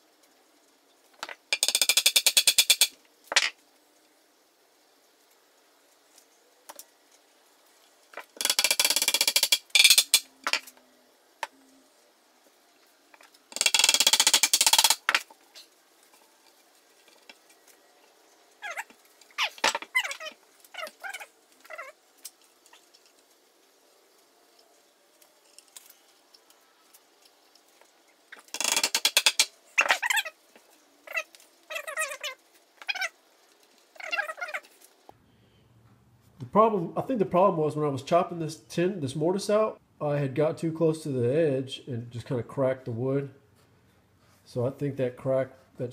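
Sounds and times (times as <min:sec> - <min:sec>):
harsh workshop tool noise: 0:08.2 - 0:10.7, 0:13.2 - 0:15.6, 0:28.3 - 0:30.2.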